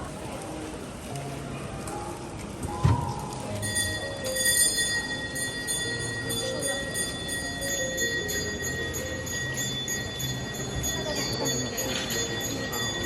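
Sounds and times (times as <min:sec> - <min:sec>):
bells ringing: 0:03.6 - 0:13.0.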